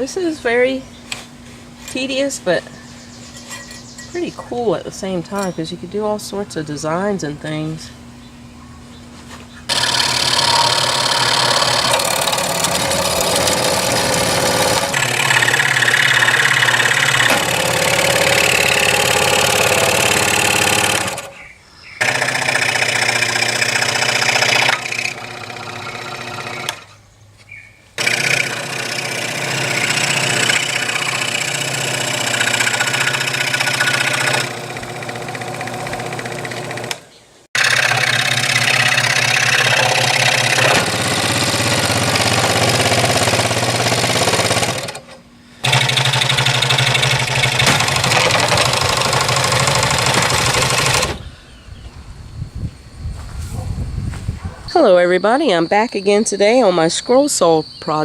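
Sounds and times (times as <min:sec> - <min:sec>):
scroll saw cutting plywood: 0:09.7 - 0:21.4, 0:22.0 - 0:27.0, 0:28.0 - 0:51.2.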